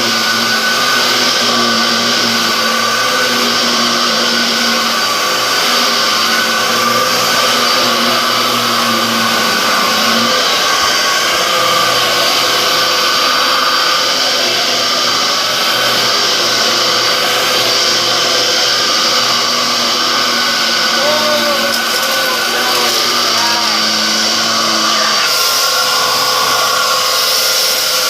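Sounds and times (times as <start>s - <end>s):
vacuum cleaner motor whine: 0.0s - 28.0s.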